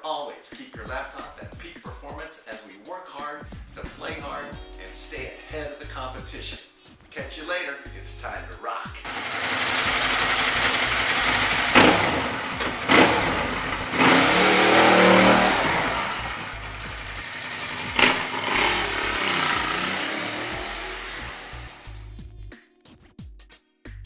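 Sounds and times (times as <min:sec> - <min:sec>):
motorcycle engine revving: 0:09.1 - 0:22.1.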